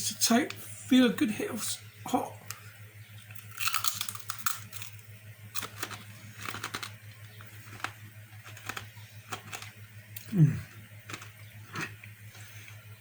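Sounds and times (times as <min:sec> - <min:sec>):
crunching and chewing: 0:03.2 - 0:12.9.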